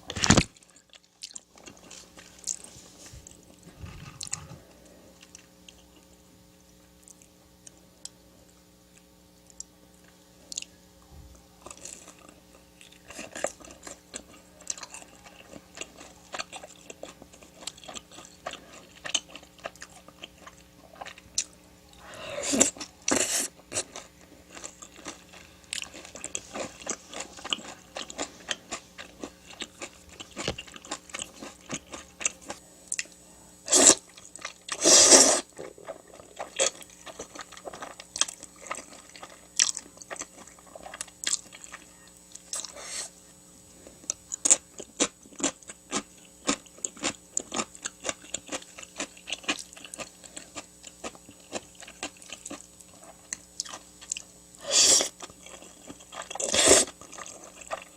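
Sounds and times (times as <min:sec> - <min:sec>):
crunchy bites and chewing: 0:22.5 - 0:33.1, 0:33.7 - 0:43.2, 0:44.0 - 0:57.9.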